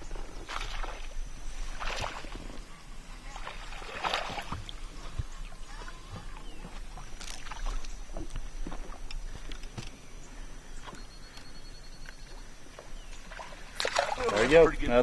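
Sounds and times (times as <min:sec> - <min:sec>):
splash: 0:00.5 - 0:01.1, 0:01.7 - 0:02.4, 0:03.4 - 0:04.8, 0:13.3 - 0:14.6.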